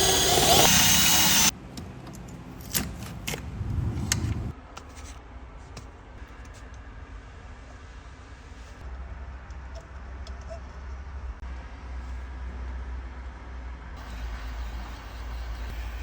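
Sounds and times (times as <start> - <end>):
low rumble: 3.3 - 4.5.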